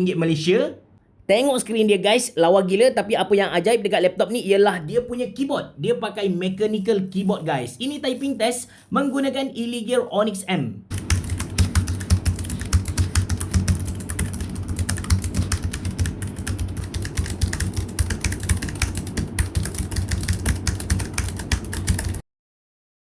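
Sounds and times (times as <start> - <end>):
fast typing on mechanical keyboard: 10.9 - 22.2.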